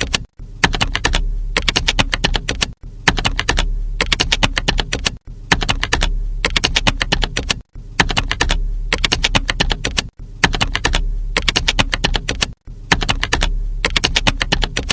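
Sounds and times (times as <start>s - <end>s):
fast keyboard typing: 0.0s - 14.9s
low steady hum: 0.4s - 14.7s.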